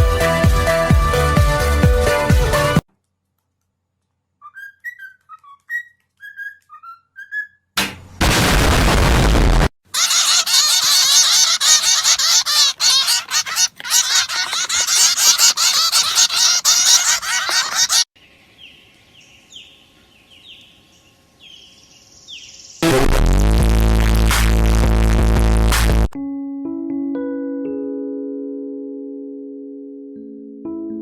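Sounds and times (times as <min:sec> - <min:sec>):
flock of birds calling: 0:10.0 - 0:18.1.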